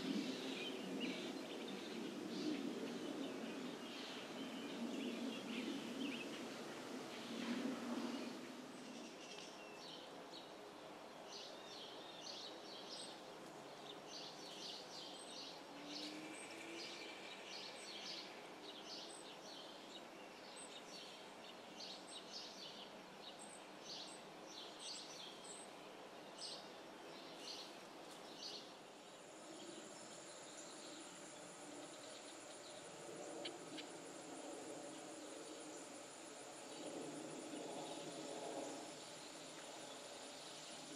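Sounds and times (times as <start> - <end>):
songbird chirping: 0.0 - 40.9
high insect trill: 29.2 - 40.9.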